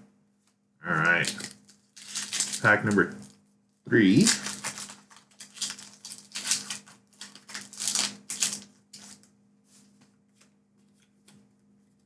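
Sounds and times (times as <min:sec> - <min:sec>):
faint steady hum: 0:00.0 - 0:12.0
cards rustling and clicking: 0:01.0 - 0:03.4, 0:04.1 - 0:11.5
foil wrapper crinkling: 0:01.0 - 0:03.4, 0:04.1 - 0:09.3.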